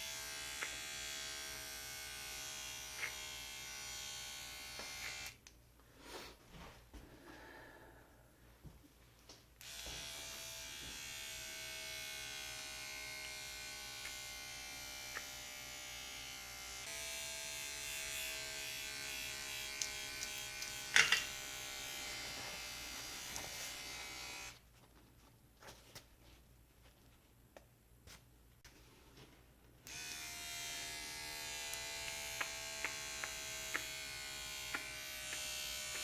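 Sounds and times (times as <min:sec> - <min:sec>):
tattoo machine buzzing: 0:00.0 - 0:05.4, 0:09.6 - 0:24.6, 0:29.8 - 0:36.0.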